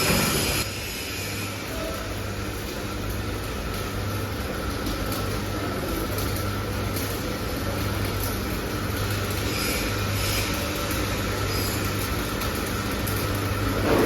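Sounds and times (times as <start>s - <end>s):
machinery humming and whirring: 0.0s - 14.0s.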